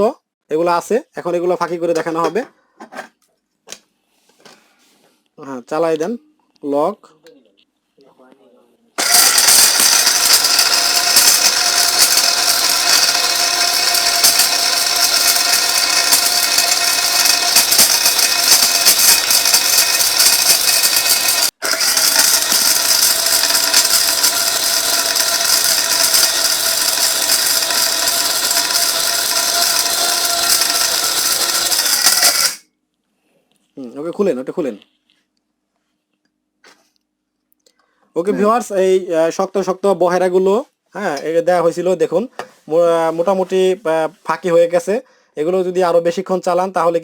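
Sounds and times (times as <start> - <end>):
electric grinder grinding dried fruit: 9.0 - 32.6.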